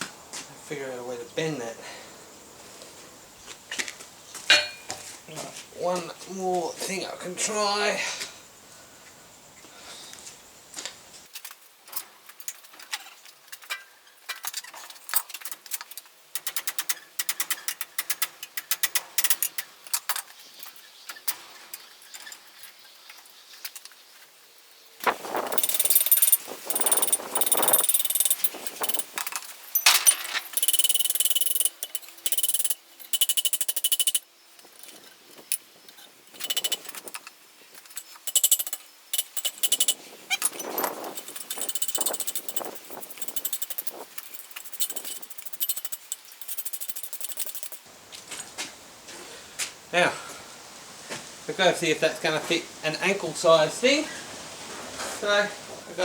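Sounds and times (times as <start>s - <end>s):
hammer striking steel on anvil: 4.5s - 5.0s.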